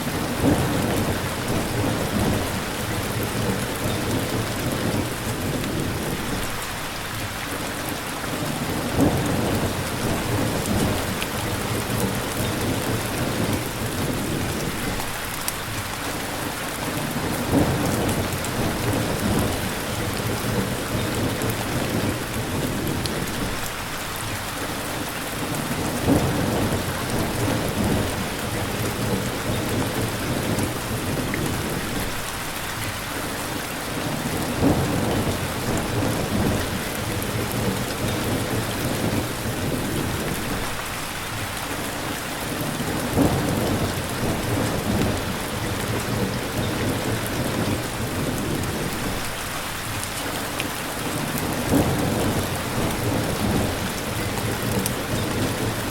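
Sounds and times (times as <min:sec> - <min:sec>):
steady rain: 0:00.0 - 0:55.9
thunder rumbles: 0:00.1 - 0:06.7, 0:08.4 - 0:15.2, 0:17.0 - 0:23.8, 0:25.4 - 0:32.3, 0:34.0 - 0:40.8, 0:42.5 - 0:50.1, 0:51.1 - 0:55.9.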